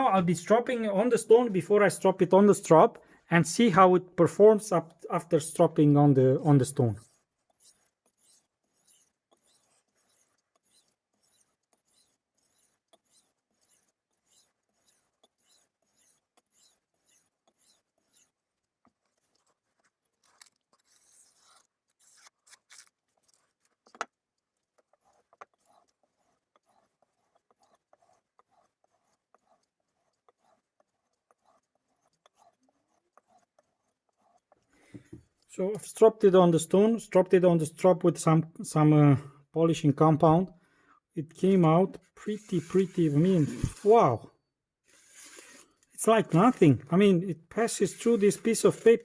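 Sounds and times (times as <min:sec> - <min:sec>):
knife strokes on whetstone: 0:06.4 - 0:22.9, 0:42.2 - 0:44.2, 0:47.6 - 0:49.0.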